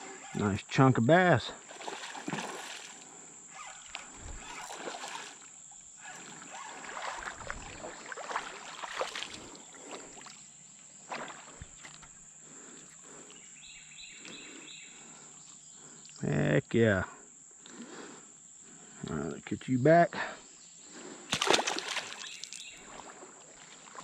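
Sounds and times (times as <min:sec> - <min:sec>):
high insect drone: 0:00.0 - 0:24.0
rapid cricket-like chirping: 0:00.0 - 0:24.0
fish being handled in a kayak: 0:01.6 - 0:16.2, 0:20.8 - 0:24.0.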